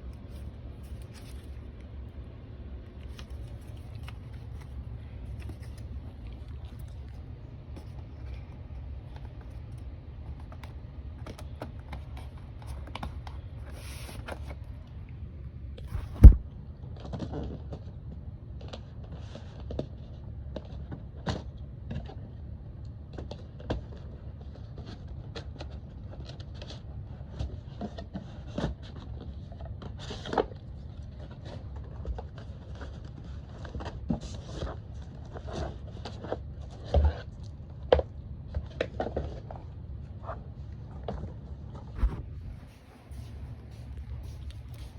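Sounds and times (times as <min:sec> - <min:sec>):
packaging being handled: 0:00.0 - 0:02.0, 0:02.8 - 0:14.7
steady low hum: 0:00.0 - 0:19.2, 0:30.6 - 0:44.9
loud thump: 0:15.9 - 0:16.5.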